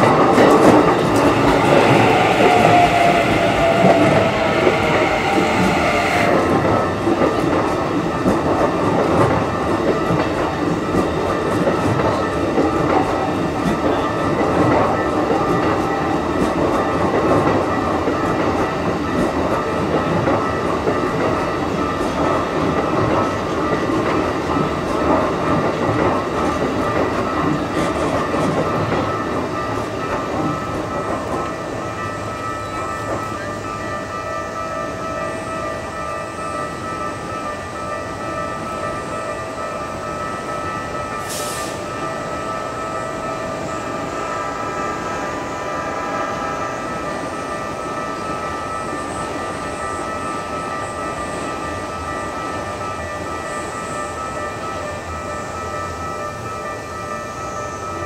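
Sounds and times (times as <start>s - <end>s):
level crossing alarm ringing: 0.6s - 6.6s.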